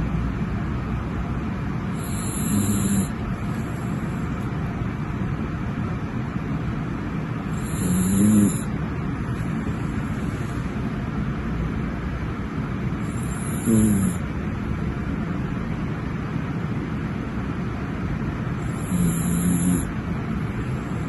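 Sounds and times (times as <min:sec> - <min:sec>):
dog snoring: 0:01.9 - 0:04.5, 0:07.5 - 0:08.7, 0:13.0 - 0:14.3, 0:18.6 - 0:19.9, 0:20.5 - 0:21.0.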